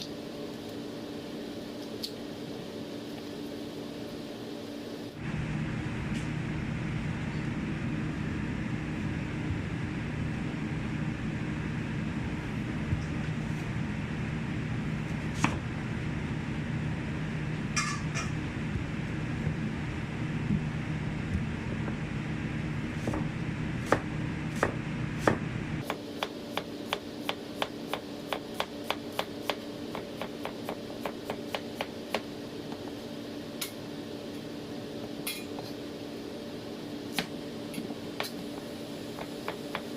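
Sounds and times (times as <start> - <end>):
steady mechanical hum: 0.0 - 39.9
knife chopping on cutting board: 15.3 - 15.6, 23.0 - 32.2.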